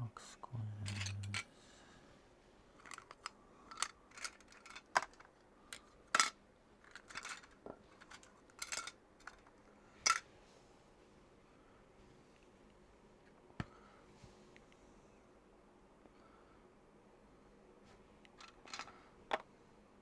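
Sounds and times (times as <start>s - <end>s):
plastic bricks clicking and clattering: 0.9s - 1.4s, 2.8s - 9.5s, 18.4s - 19.4s.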